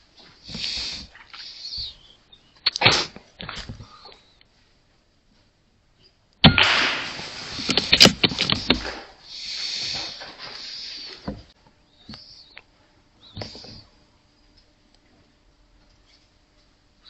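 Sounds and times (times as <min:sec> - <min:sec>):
high hissing noise: 0:00.4 - 0:02.0, 0:06.5 - 0:11.4
air rifle shot: 0:06.4 - 0:08.9.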